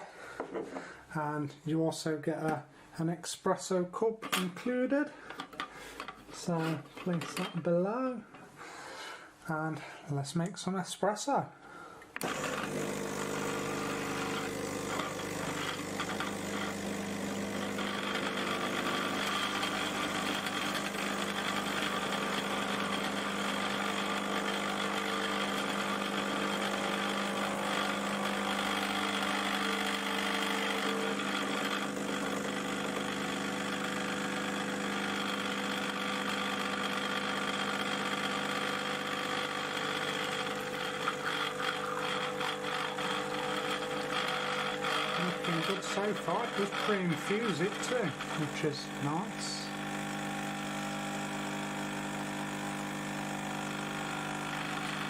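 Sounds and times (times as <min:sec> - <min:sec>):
espresso machine pump humming: 0:12.2 - 0:55.0.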